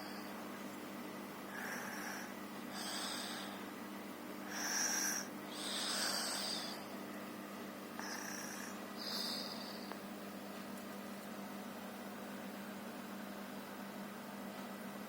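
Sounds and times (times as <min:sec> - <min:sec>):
wheezy snoring: 0:01.5 - 0:03.6, 0:04.4 - 0:06.9, 0:08.0 - 0:09.9.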